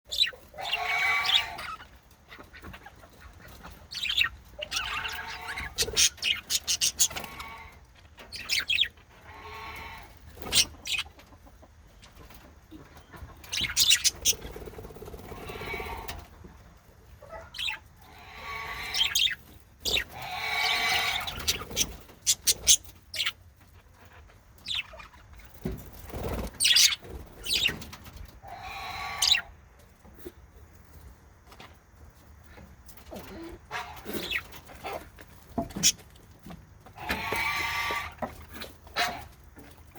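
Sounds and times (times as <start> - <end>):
budgies calling: 0.1 - 11.1, 13.0 - 16.2, 17.3 - 23.4, 24.6 - 25.5, 26.2 - 29.5, 33.3 - 36.0.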